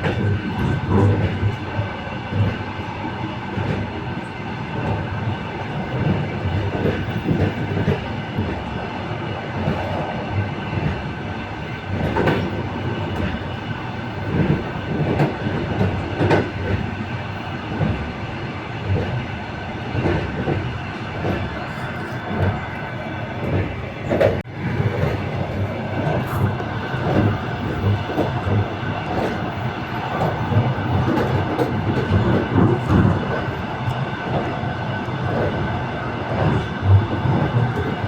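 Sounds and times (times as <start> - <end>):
train wheels clattering: 19.9 - 38.0.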